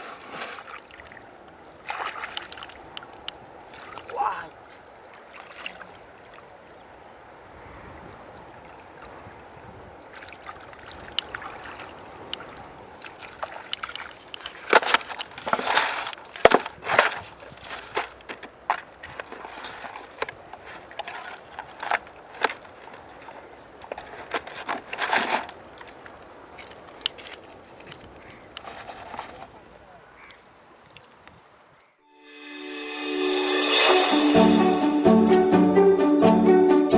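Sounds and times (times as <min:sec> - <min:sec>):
short splashes: 0:00.0 - 0:06.6, 0:08.2 - 0:31.2
running river water: 0:00.0 - 0:32.0.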